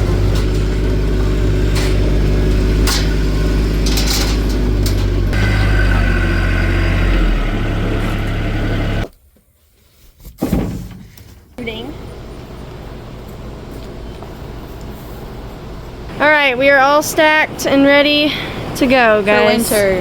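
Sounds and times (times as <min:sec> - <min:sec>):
vehicle engine running: 0:00.0 - 0:09.1, 0:11.6 - 0:20.0.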